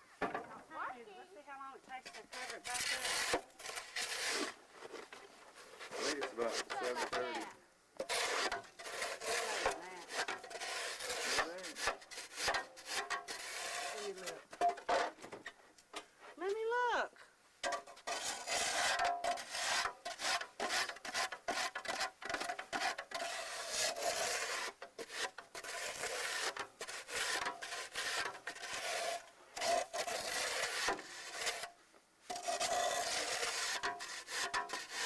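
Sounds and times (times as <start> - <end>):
crunching and scraping in snow: 2.4 - 7.4.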